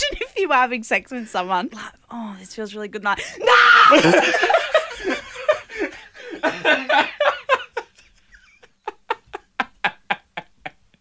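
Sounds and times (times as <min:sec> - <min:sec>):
person laughing: 0:03.9 - 0:11.0.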